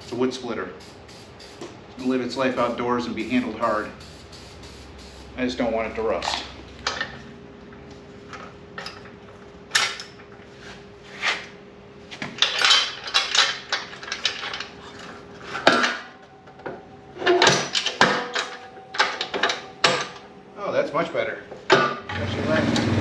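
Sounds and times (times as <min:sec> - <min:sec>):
faint steady hum: 0:00.0 - 0:10.5.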